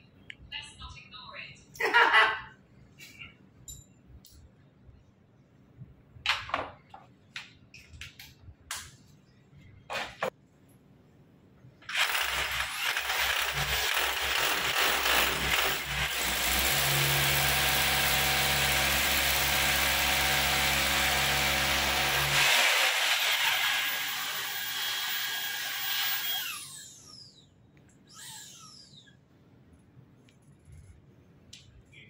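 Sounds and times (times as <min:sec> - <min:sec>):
electric drill boring into wall: 0:11.9 - 0:27.4.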